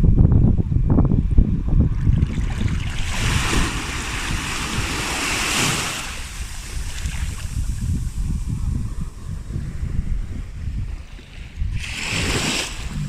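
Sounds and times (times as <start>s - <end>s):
wind buffeting microphone: 0.0s - 13.0s
wave breaking on beach: 2.5s - 7.7s.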